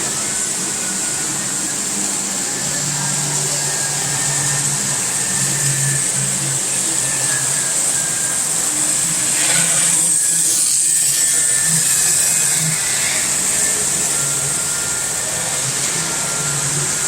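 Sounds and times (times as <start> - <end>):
model train motor humming: 0.0 - 17.0.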